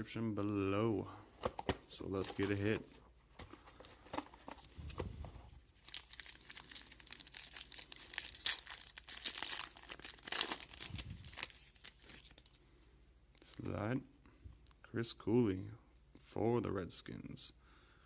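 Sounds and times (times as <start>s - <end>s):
card pack wrapper tearing: 5.8s - 12.6s.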